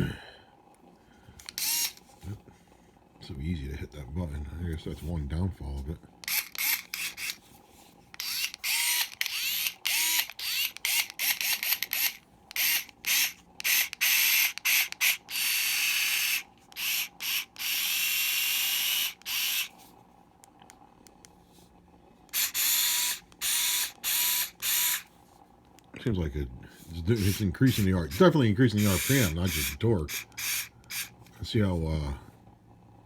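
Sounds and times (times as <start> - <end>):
cordless screwdriver motor whining: 1.4 - 2.1, 6.2 - 7.5, 8.1 - 19.8, 22.3 - 25.1, 27.1 - 31.2.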